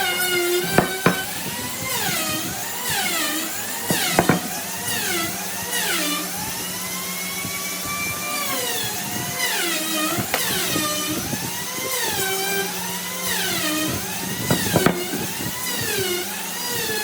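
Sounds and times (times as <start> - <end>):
power tool motor cutting wood: 0.0 - 17.0
sharp knocks: 0.6 - 1.6, 3.9 - 4.7, 14.5 - 15.4.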